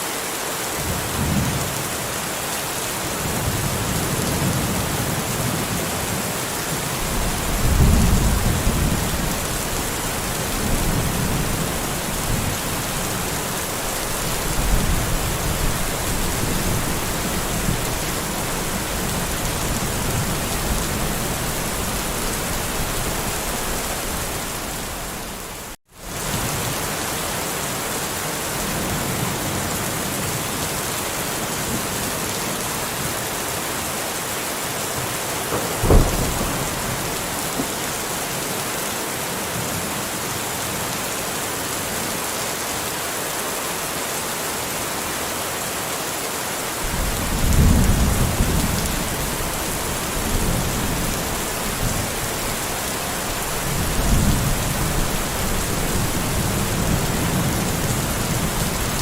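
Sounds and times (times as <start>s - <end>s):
steady rain: 0.0s - 59.0s
rolling thunder: 7.0s - 13.5s, 35.5s - 38.0s, 46.9s - 59.0s.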